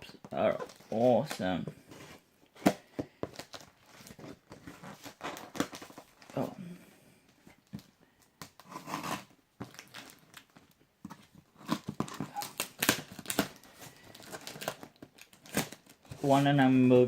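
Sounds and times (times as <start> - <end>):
plastic and bubble wrap crinkling: 0.0 - 6.6, 8.5 - 17.0
packaging tearing: 11.6 - 16.2.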